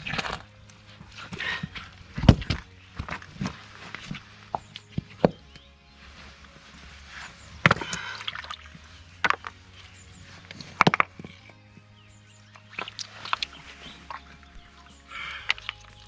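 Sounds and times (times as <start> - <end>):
stones knocking: 0.0 - 0.5.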